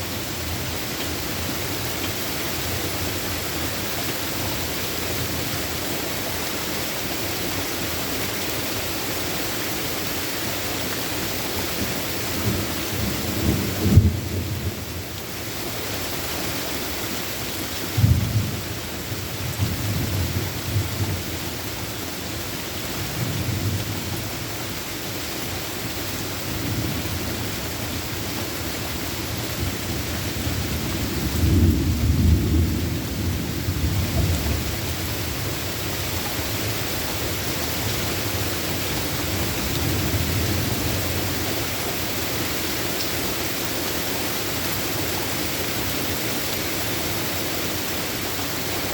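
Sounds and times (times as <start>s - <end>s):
heavy rain: 0.0s - 48.9s
thunder cracks and rumbling: 29.7s - 35.7s.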